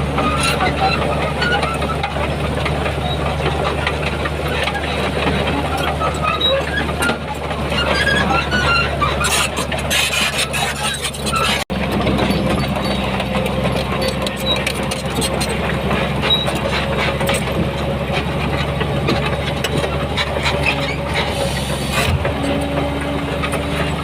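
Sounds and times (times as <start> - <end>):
diesel machinery engine drone: 0.0 - 24.0
high squeaks and squeals: 0.2 - 2.2, 4.6 - 17.4, 20.0 - 22.2.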